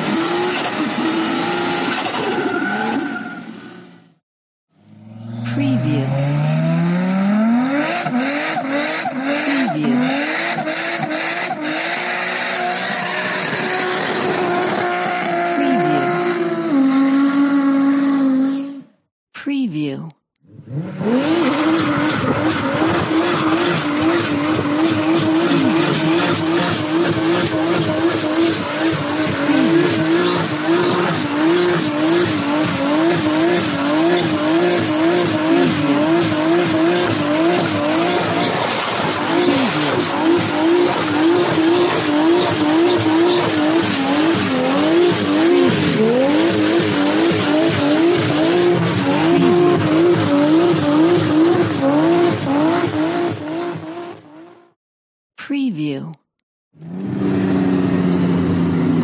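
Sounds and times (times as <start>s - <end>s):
racing car engine running hard: 20.6s - 54.6s.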